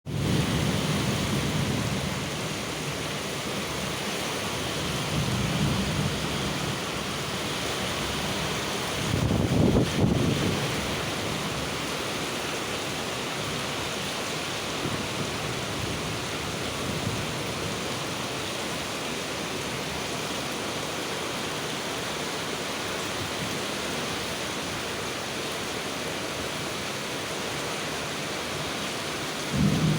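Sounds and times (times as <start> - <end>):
thunder rumbling: 0.1 - 2.7, 29.5 - 29.9
heavy rain hissing: 0.1 - 29.9.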